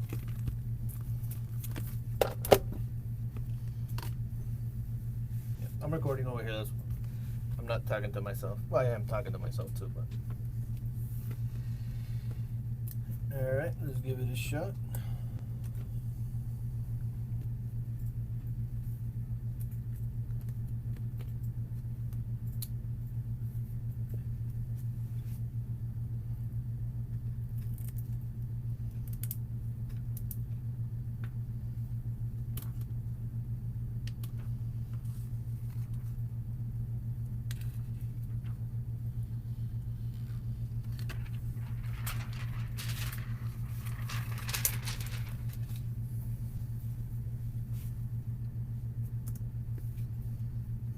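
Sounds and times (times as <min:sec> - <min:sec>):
steady low hum: 0:00.0 - 0:50.9
handling noise: 0:40.9 - 0:45.9.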